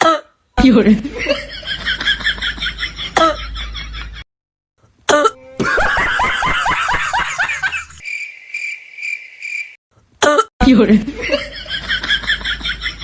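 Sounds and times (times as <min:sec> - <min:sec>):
crickets chirping: 0:07.7 - 0:09.8.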